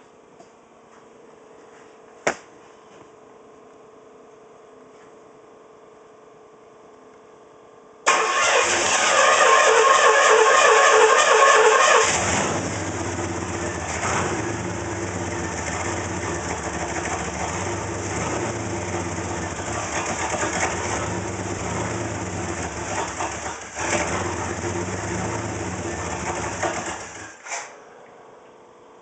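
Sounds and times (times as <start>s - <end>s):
engine idling roughly: 8.1s - 27.4s.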